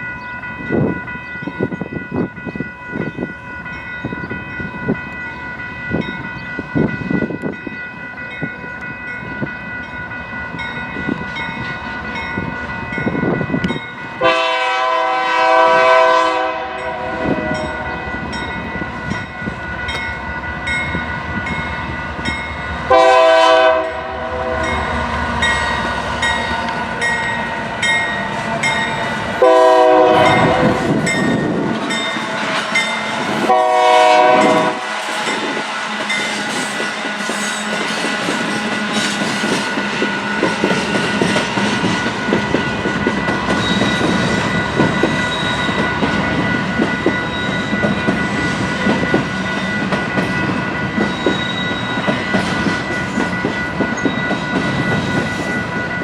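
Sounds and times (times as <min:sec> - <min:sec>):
locomotive horn blasts: 0:14.2 - 0:18.2, 0:22.9 - 0:25.0, 0:29.4 - 0:31.1, 0:31.7 - 0:36.0
freight cars clickety-clack: 0:34.5 - 0:56.0.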